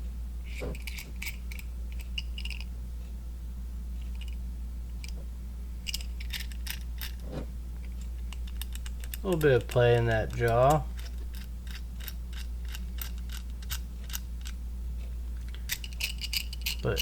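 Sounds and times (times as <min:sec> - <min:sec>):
steady low hum: 0:00.0 - 0:17.0
wrench clicking and rattling: 0:00.5 - 0:02.7, 0:04.0 - 0:04.4, 0:05.8 - 0:07.2, 0:07.8 - 0:14.6, 0:15.5 - 0:17.0.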